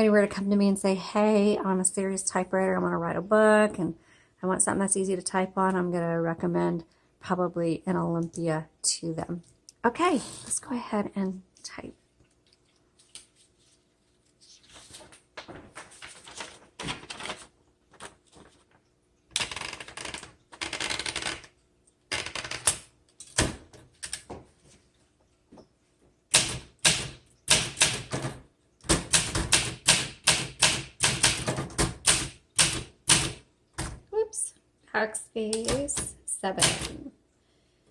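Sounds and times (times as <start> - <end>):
typewriter clatter: 26.3 - 28.3, 28.9 - 33.4
typewriter keystrokes clacking: 26.3 - 28.3, 28.9 - 33.4.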